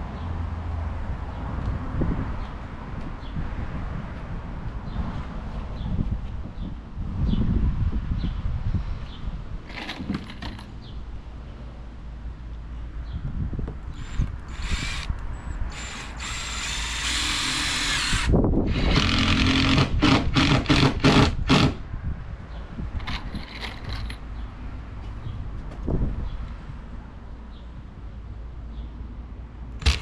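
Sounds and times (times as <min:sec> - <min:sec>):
power drill driving screws: 0:14.0 - 0:15.1, 0:15.7 - 0:21.8, 0:29.8 - 0:30.0.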